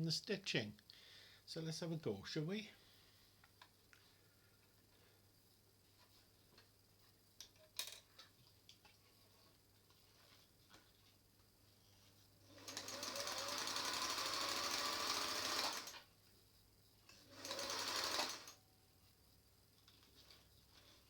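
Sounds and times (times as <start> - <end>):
sewing machine stitching: 12.5 - 16.0, 17.2 - 18.6.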